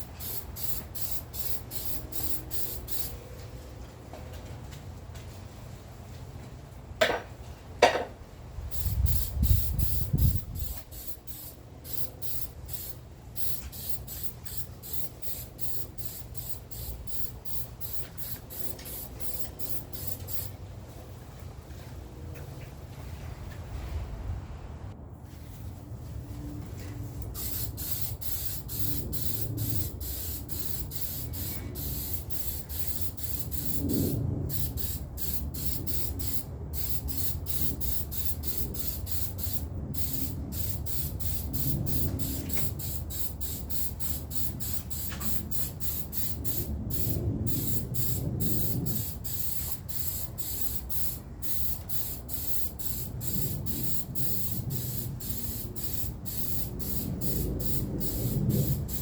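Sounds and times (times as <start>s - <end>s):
aerosol spray can hissing: 0.0s - 3.2s, 8.7s - 20.5s, 27.2s - 59.0s.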